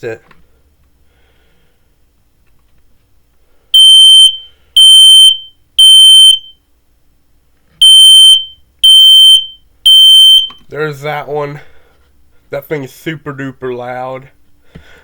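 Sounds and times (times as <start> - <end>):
smoke alarm shrill beeps: 3.8 - 6.6, 7.8 - 10.6.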